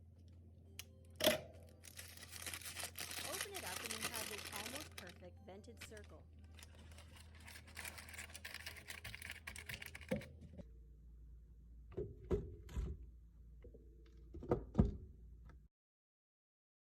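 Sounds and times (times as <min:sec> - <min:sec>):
paper liner rustling: 0:01.8 - 0:05.2, 0:05.8 - 0:10.2.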